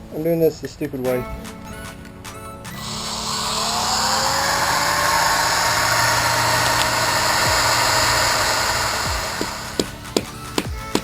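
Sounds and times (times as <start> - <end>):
electric power tool whining: 2.7 - 11.0.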